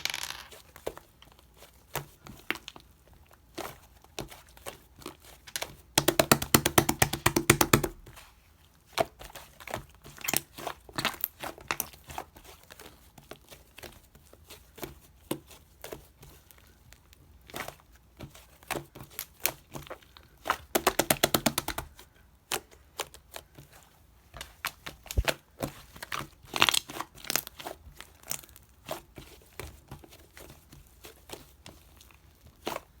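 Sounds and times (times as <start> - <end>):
rapid popping clicks: 20.8 - 21.9.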